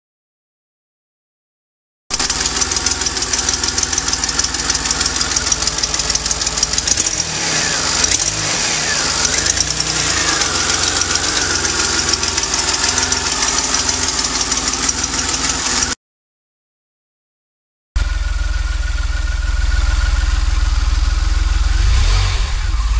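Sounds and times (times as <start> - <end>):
car engine running unevenly: 2.1 - 16.0, 18.0 - 22.9
exhaust leak ticking and hiss: 2.1 - 16.0.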